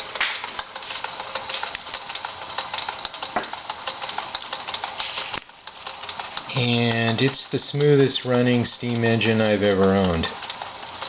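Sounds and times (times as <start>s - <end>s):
toy steam engine ticking: 0.0s - 11.0s.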